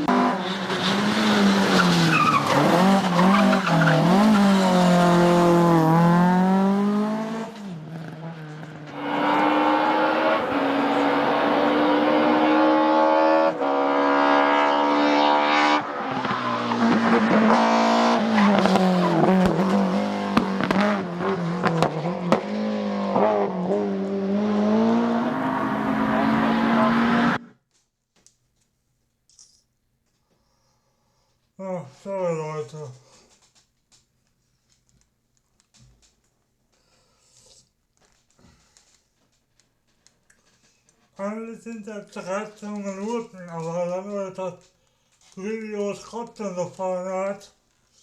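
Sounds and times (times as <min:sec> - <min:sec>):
rally car engines revving: 0:00.0 - 0:27.4.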